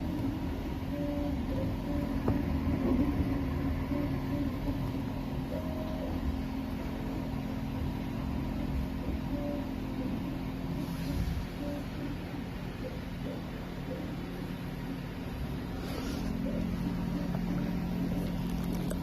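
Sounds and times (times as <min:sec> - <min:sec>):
stepper motors whining: 0:00.0 - 0:14.2
steady printer hum: 0:00.0 - 0:19.0.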